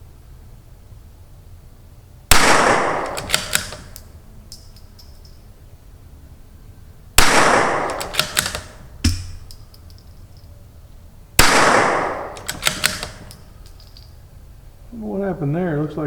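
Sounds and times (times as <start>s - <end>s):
rifle shots: 2.3s - 4.0s, 7.2s - 9.8s, 11.4s - 13.6s
rifle bolt metallic clicks: 2.9s - 5.4s, 7.2s - 10.6s, 11.4s - 14.2s.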